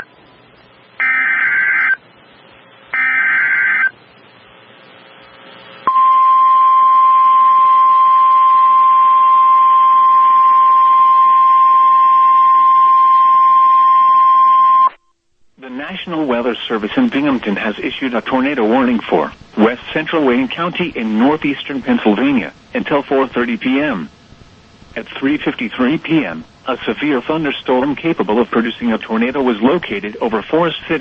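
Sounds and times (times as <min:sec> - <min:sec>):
buzzy digital data bursts: 0:01.0 - 0:02.0, 0:02.9 - 0:04.0
steady warning alarm tone: 0:01.0 - 0:02.0, 0:02.9 - 0:04.0, 0:05.8 - 0:14.9.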